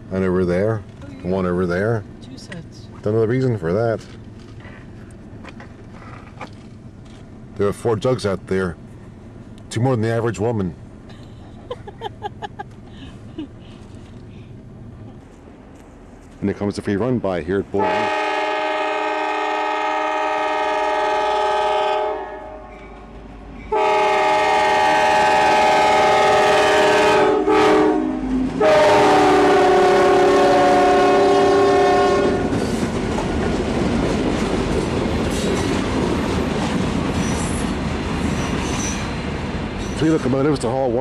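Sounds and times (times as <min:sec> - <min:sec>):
locomotive rumble: 0:00.0 - 0:41.0
locomotive air horn blasts: 0:17.8 - 0:22.8, 0:23.7 - 0:32.6
wheel clatter on rails: 0:32.5 - 0:40.8.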